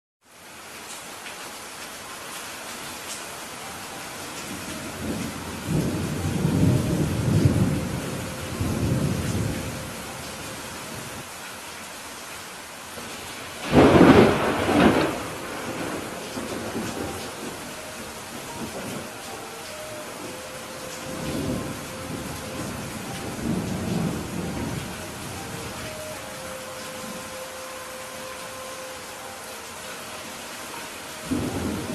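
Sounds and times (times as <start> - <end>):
heavy rain falling: 0.2 - 31.9
thunder rumbling: 4.5 - 11.2, 13.1 - 27.4, 31.2 - 31.9.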